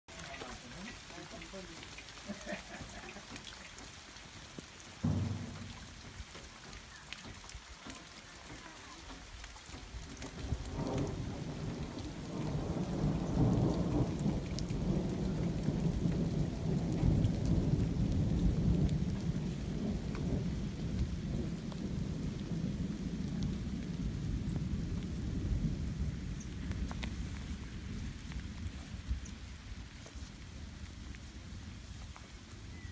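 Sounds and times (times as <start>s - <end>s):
rain falling: 0.1s - 32.9s
thunderclap: 5.0s - 7.1s, 10.2s - 27.6s
low roll of thunder: 5.0s - 7.4s, 9.9s - 31.9s.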